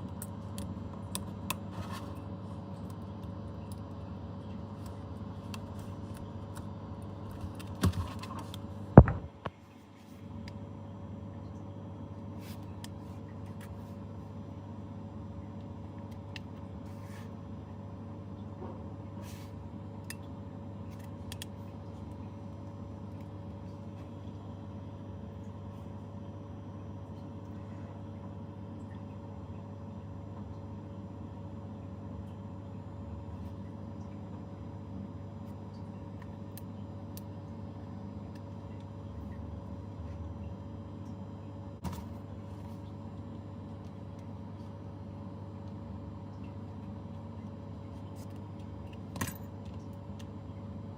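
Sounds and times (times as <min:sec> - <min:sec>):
small fan motor humming: 0:00.0 - 0:50.9.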